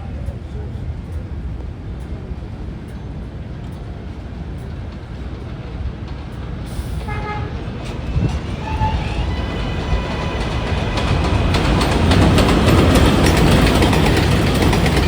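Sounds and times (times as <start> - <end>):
subway train rumbling: 0.0 - 15.0
train horn toots: 7.0 - 11.2.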